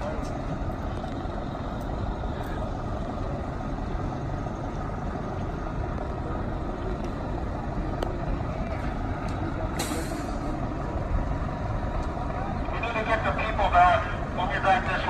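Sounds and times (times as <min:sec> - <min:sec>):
large engine rumbling: 0:00.0 - 0:15.0
short hiss: 0:09.8 - 0:10.5.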